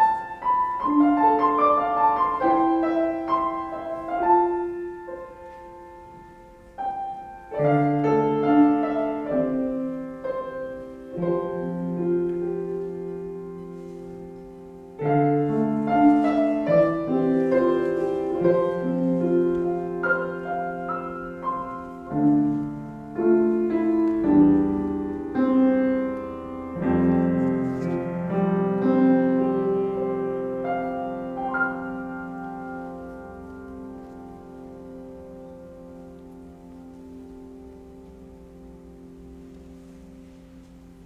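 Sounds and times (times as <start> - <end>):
slow solo piano: 0.0 - 41.0.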